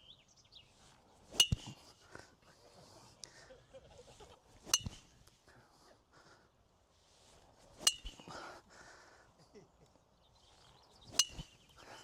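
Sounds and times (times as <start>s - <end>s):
golf club striking ball: 1.3s - 1.8s, 4.7s - 5.0s, 7.8s - 8.2s.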